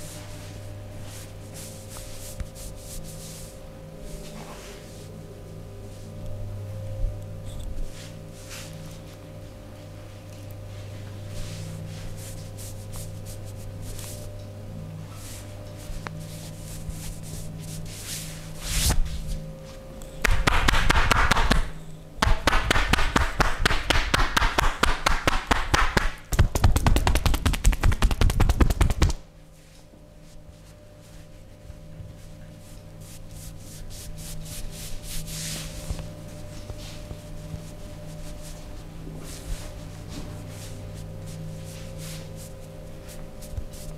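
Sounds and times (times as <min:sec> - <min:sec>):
steady low hum: 0:00.0 - 0:43.9
hands slapping on body: 0:20.2 - 0:29.2.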